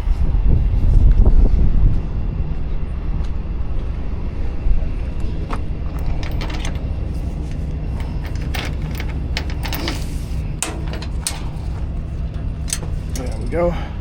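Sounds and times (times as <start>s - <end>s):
heavy engine idling: 2.6s - 14.0s
sharp clicks and knocks: 8.0s - 13.5s.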